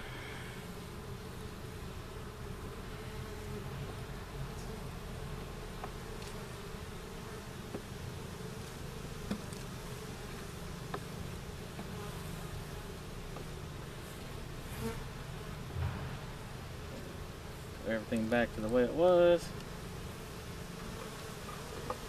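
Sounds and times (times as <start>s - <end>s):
honeybees buzzing: 0.0s - 22.0s.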